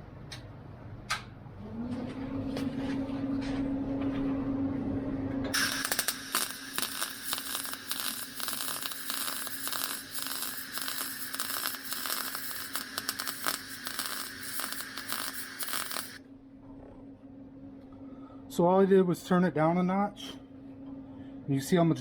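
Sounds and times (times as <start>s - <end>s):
faint steady hum: 0.0s - 22.0s
welding arc crackling sizzle: 5.5s - 16.2s.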